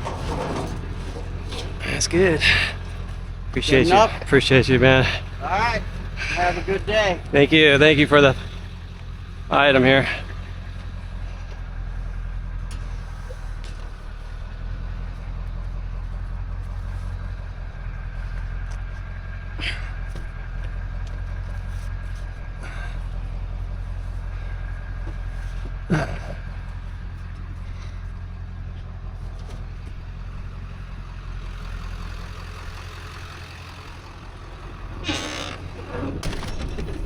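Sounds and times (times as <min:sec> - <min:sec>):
vehicle engine droning: 0:00.0 - 0:37.0.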